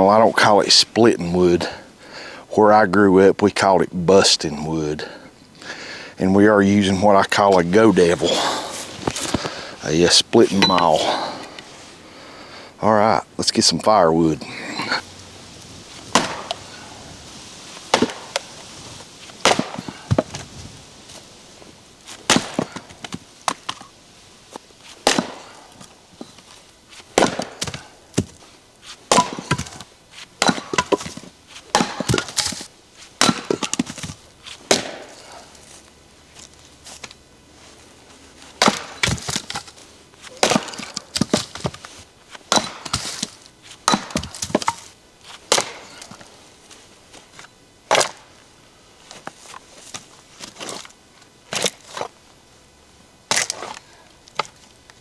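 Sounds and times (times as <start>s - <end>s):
wood cracking apart: 14.4s - 21.4s
split wood pieces knocking: 16.1s - 16.9s, 17.8s - 18.5s, 19.4s - 20.5s, 29.1s - 35.0s, 42.5s - 44.9s
splitting maul striking wood: 16.1s - 16.9s, 17.9s - 18.4s, 19.4s - 20.4s, 25.0s - 25.6s, 27.2s - 28.3s, 29.1s - 32.6s, 34.7s - 35.1s, 38.6s - 39.7s, 42.5s - 43.3s, 43.9s - 44.9s, 45.5s - 46.1s.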